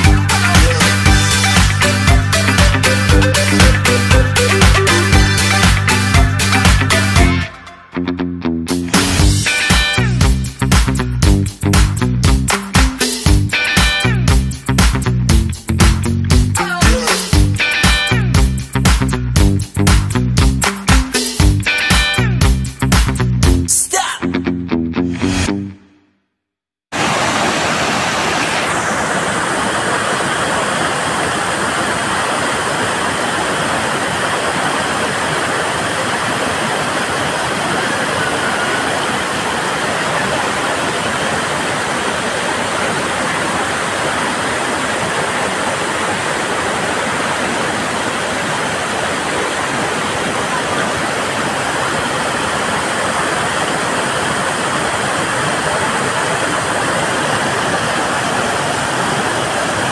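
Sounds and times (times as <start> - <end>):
waterfall rushing: 0.0 - 7.7, 9.1 - 10.2, 16.6 - 18.4, 21.0 - 22.2, 26.9 - 59.9.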